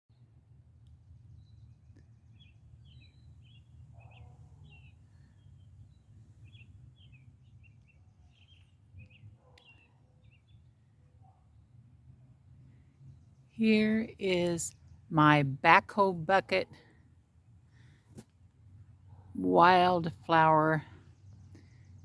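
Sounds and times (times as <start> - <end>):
small birds chirping: 0.9 - 11.1, 19.6 - 22.0.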